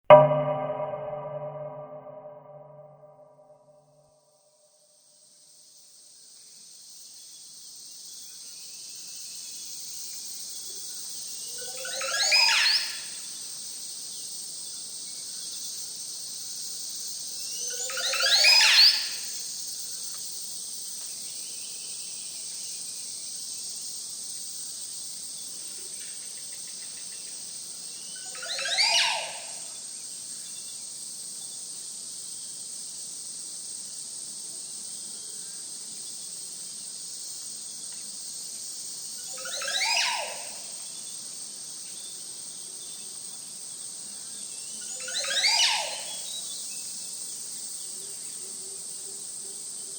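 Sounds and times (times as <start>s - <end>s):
animal call sweeping upward: 28.4s - 29.6s.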